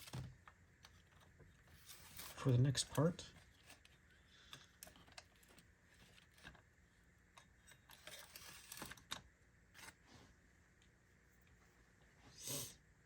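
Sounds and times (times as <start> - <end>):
small parts clicking and rustling: 0.0 - 6.7, 7.3 - 10.0.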